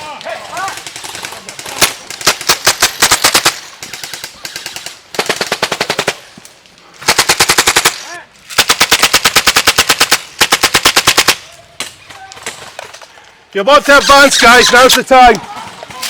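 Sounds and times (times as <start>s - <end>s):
airsoft rifles firing bursts: 0.4s - 6.3s, 7.0s - 8.0s, 8.6s - 11.5s.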